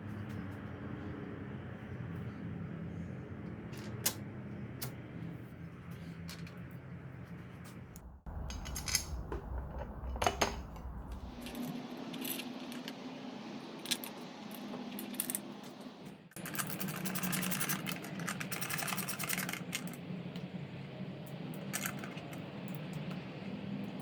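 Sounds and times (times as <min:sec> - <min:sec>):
low steady hum: 0:00.0 - 0:24.0
small metal parts clinking: 0:16.4 - 0:20.0, 0:21.7 - 0:22.8.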